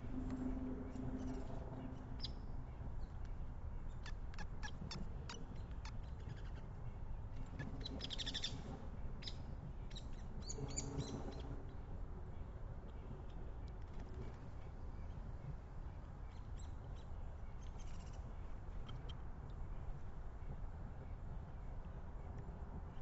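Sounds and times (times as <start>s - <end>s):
low hum: 0.0s - 3.8s.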